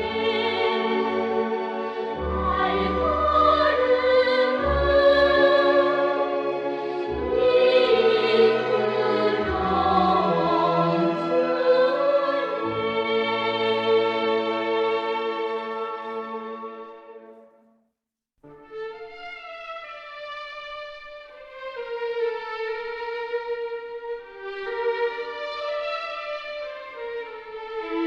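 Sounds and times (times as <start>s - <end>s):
choir singing operatically: 0.0s - 16.0s
orchestral accompaniment: 0.0s - 17.4s.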